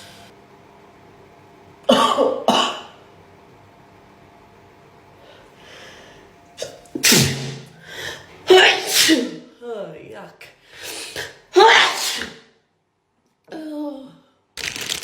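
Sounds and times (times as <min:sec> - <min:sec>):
person coughing: 0:01.9 - 0:03.0, 0:06.6 - 0:07.8.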